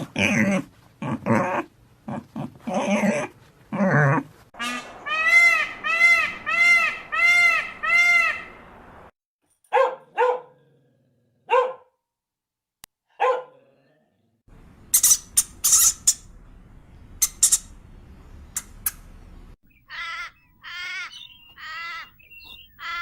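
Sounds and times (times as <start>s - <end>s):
pitched animal calls: 0.0s - 8.5s, 19.9s - 23.0s
sharp scratchy animal calls: 14.9s - 16.3s, 17.2s - 17.8s.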